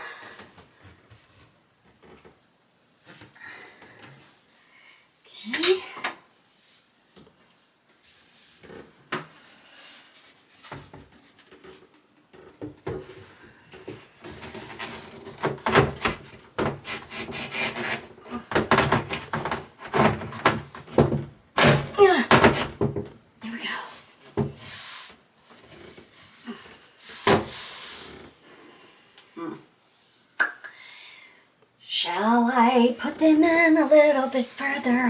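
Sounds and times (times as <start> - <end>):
scraping on hard surface: 16.8 - 18.1.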